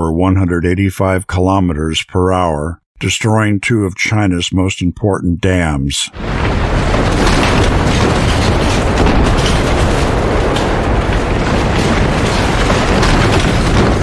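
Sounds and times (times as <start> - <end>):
roaring storm wind: 6.2 - 14.0
scattered crackles: 6.2 - 14.0.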